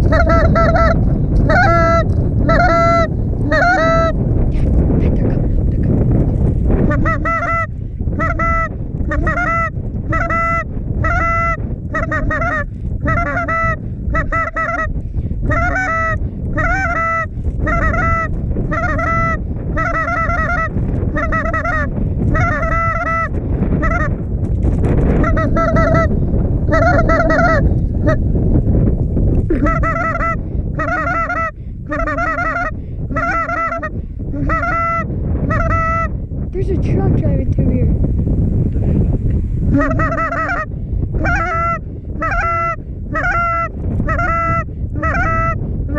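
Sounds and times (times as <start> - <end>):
goose honking: 0.0 - 4.2, 6.8 - 14.9, 15.5 - 24.1, 25.2 - 26.1, 26.7 - 28.2, 29.5 - 36.1, 39.7 - 45.6
wind rumble on microphone: 0.0 - 45.9.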